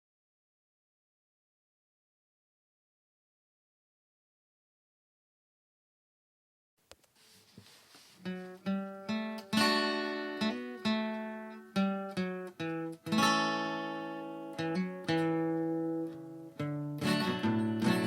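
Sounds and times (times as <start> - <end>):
acoustic guitar music: 7.6 - 18.0.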